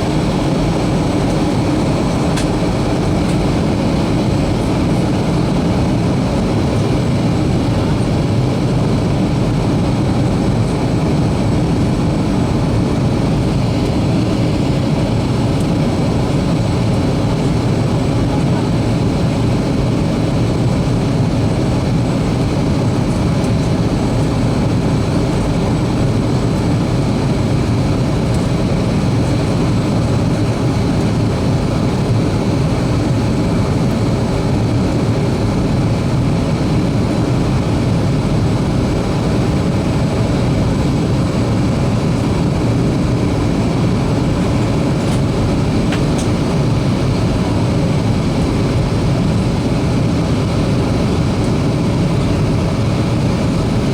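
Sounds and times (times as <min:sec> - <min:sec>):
airflow rush in airliner cabin: 0:00.0 - 0:53.9
jet engines humming: 0:00.0 - 0:53.9.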